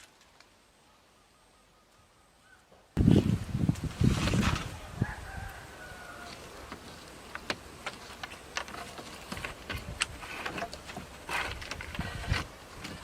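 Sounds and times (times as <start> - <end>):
rooster crowing: 4.7 - 6.7.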